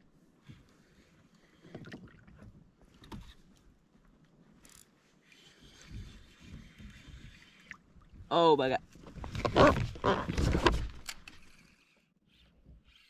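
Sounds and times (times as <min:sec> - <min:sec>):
light water noise: 0:00.0 - 0:09.5.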